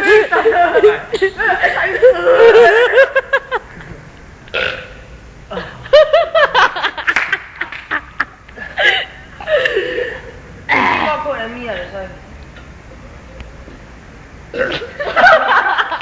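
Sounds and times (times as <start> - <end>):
person burping loudly: 4.5 - 5.8, 10.7 - 11.2, 14.5 - 15.0.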